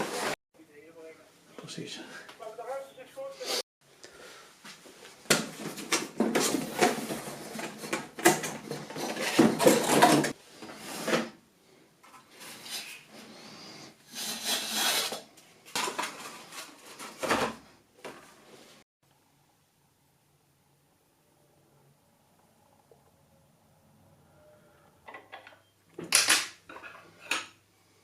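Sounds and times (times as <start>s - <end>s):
computer parts clattering: 5.8s - 10.4s.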